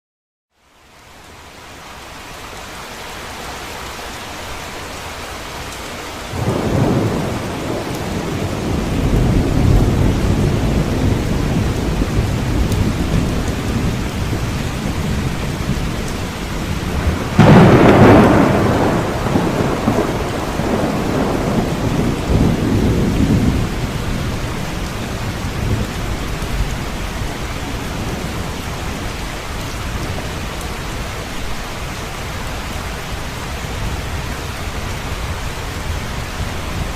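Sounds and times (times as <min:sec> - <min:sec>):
steady rain: 0:00.5 - 0:36.9
thunder rumbling: 0:06.3 - 0:30.9
sharp thunderclap: 0:06.4 - 0:15.3, 0:16.7 - 0:24.4.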